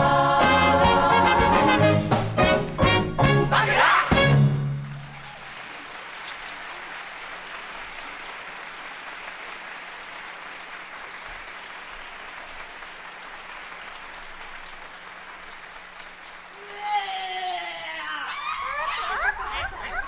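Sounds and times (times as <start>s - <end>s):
audience applauding: 4.8s - 20.0s.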